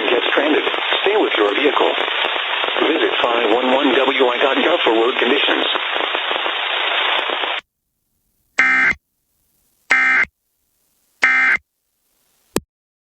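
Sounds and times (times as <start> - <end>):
screeching digital data tones: 8.6 - 9.0, 9.9 - 10.3.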